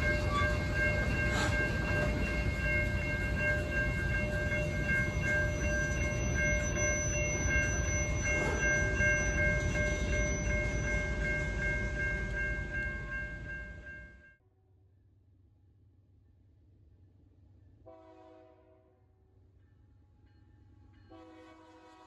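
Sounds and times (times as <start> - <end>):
sustained high tones: 0.0 - 13.9
train rumbling past: 0.0 - 14.2.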